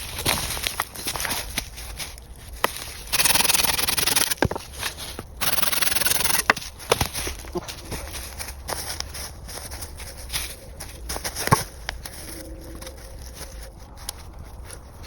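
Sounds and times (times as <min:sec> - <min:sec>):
hand tool rasping on wood: 0:03.1 - 0:04.4, 0:05.4 - 0:06.6.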